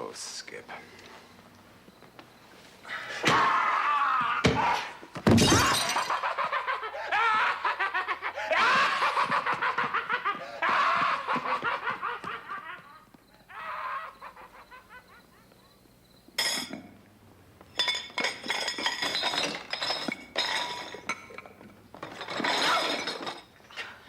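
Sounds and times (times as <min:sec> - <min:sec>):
rapid pulsing laughter: 0:06.1 - 0:15.7.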